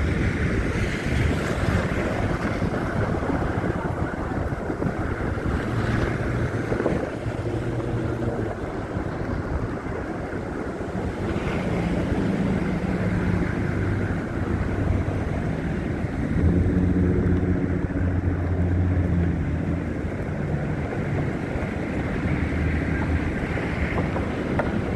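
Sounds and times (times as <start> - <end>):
vehicle engines humming in traffic: 0.0 - 24.9
wind noise on microphone: 0.0 - 24.9.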